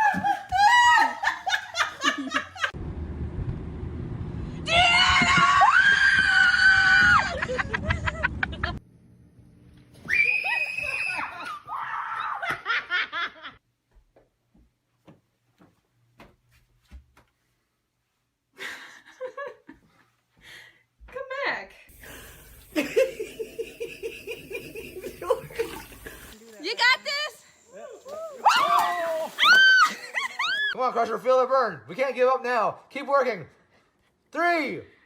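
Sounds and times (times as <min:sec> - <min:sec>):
people laughing: 0:00.0 - 0:02.8, 0:07.2 - 0:08.8, 0:22.0 - 0:26.4, 0:29.2 - 0:30.8
low rumbling noise: 0:02.8 - 0:05.0
high scream: 0:10.0 - 0:12.4, 0:27.8 - 0:30.8.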